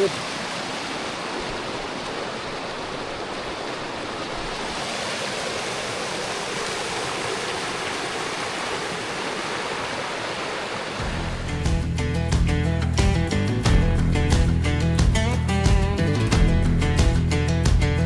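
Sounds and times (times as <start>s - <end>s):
river rapids rushing: 0.0s - 11.0s
guitar music: 11.0s - 18.0s.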